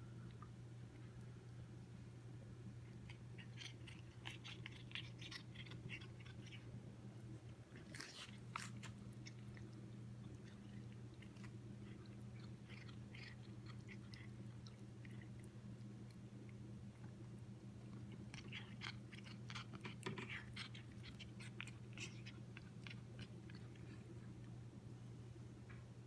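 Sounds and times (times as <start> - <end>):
steady low hum: 0.0 - 26.0
cat crunching dry treats: 2.8 - 6.7, 7.7 - 24.3.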